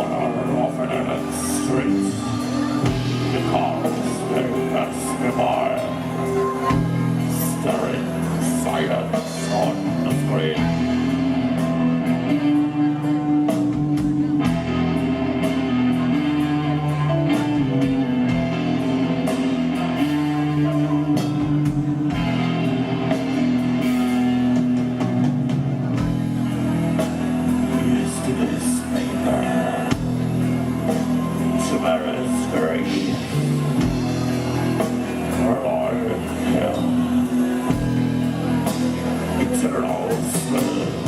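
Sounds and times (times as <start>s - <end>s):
bass guitar: 0.0s - 41.0s
distorted electric guitars: 0.0s - 41.0s
drum kit: 0.0s - 41.0s.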